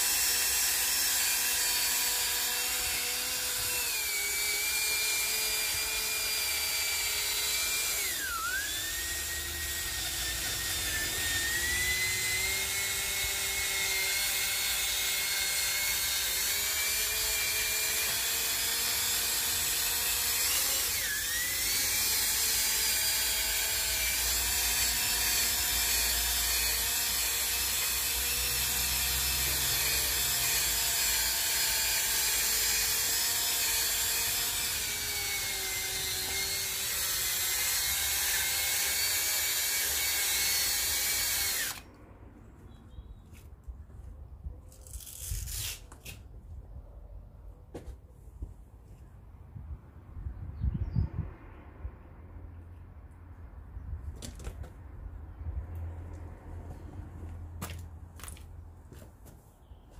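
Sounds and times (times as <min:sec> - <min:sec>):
cordless drill motor whine: 0:00.0 - 0:41.9.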